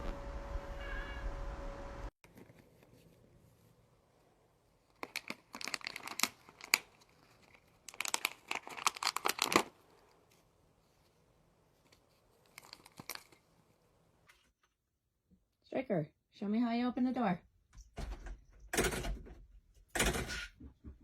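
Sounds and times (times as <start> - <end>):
crinkling rustling: 2.2 - 14.7.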